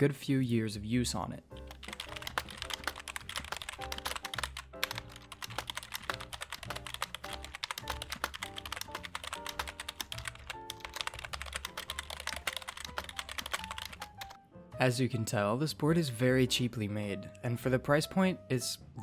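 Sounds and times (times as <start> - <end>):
fast keyboard typing: 1.6 - 14.4.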